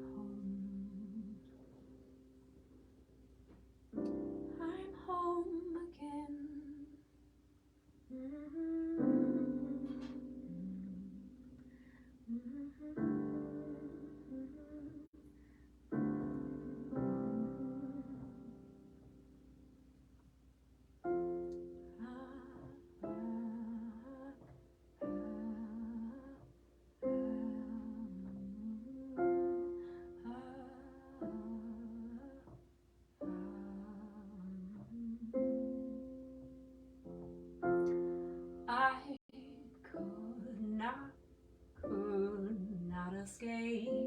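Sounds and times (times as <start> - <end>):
person singing wordless melody: 0.0 - 1.6, 4.5 - 7.0, 8.1 - 19.0, 21.4 - 32.6, 33.2 - 36.2, 38.6 - 41.2, 41.8 - 44.0
piano chords: 0.0 - 7.0, 8.1 - 44.0.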